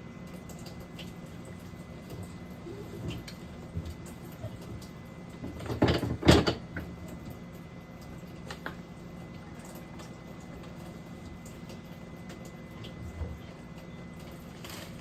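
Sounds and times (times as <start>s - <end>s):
refrigerator drawers knocking: 5.5s - 6.8s.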